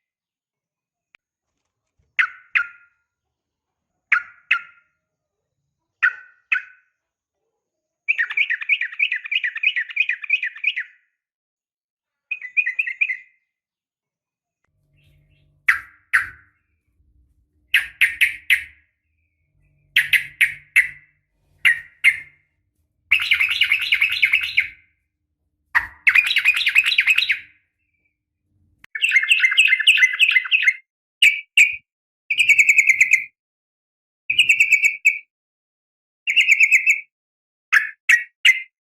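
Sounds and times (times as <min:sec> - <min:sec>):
bird calls: 0:12.3 - 0:13.4, 0:14.8 - 0:16.9, 0:17.6 - 0:22.5, 0:23.1 - 0:24.9, 0:25.7 - 0:28.2.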